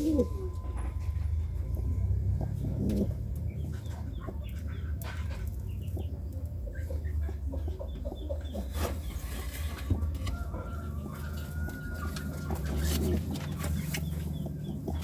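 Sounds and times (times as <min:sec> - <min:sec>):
pigeons cooing: 0:00.0 - 0:00.8, 0:02.3 - 0:05.5, 0:07.1 - 0:15.0
pigeon clucking calls: 0:02.4 - 0:15.0.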